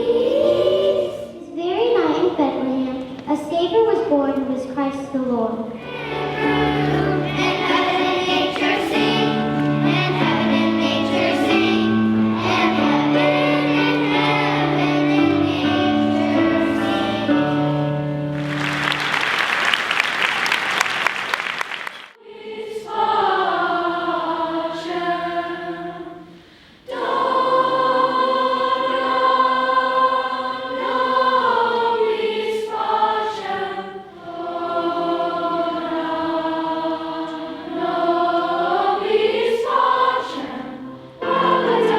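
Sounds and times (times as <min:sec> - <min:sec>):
choir singing: 0:00.0 - 0:01.4, 0:05.6 - 0:41.9
applause: 0:18.3 - 0:22.2.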